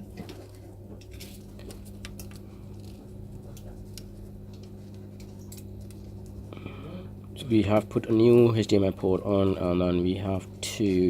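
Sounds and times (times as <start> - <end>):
low electrical hum: 0.0 - 11.0.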